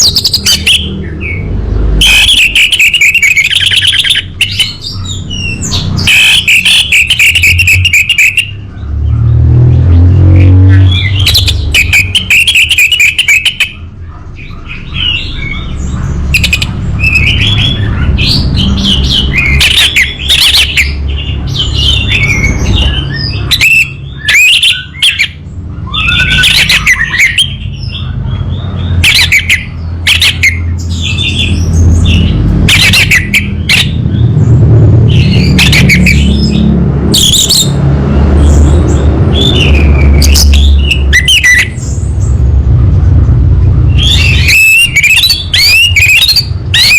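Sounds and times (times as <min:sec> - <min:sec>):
steady low rumble: 0:24.9 - 0:46.9.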